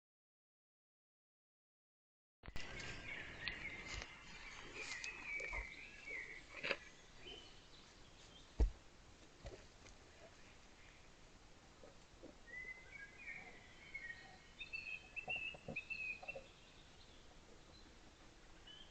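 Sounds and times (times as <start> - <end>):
birds singing: 2.5 - 8.6, 12.4 - 18.9.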